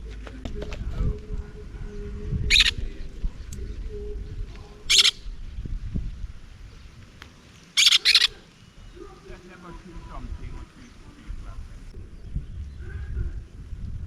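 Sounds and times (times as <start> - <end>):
low rumble of wind: 0.0 - 14.0
parrot squawking: 2.5 - 2.8, 4.9 - 5.2, 7.8 - 8.4.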